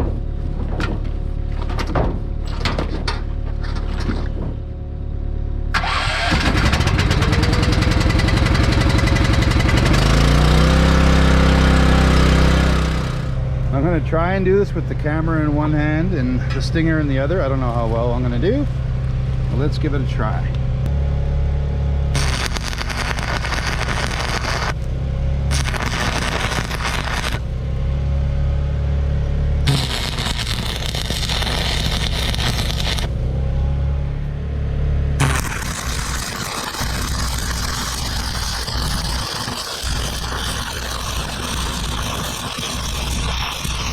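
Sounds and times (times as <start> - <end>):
steady low hum: 0.0 - 5.8, 6.5 - 43.9
engine running: 0.0 - 43.9
welding arc crackling: 5.8 - 13.4, 22.2 - 27.6, 29.6 - 33.2, 35.2 - 43.9.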